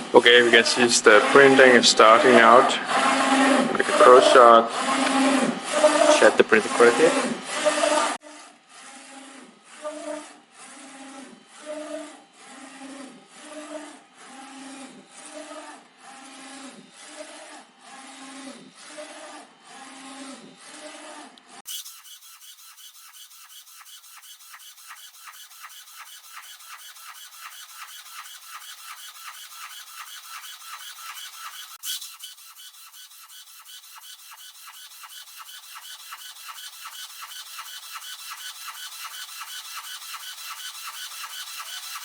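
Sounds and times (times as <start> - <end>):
printer carriage motor whine: 23.1 - 42.0.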